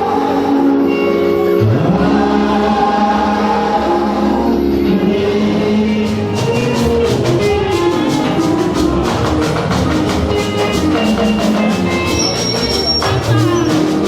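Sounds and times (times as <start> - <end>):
band playing instrumental: 5.9 - 14.0
drum kit beat: 6.1 - 14.0.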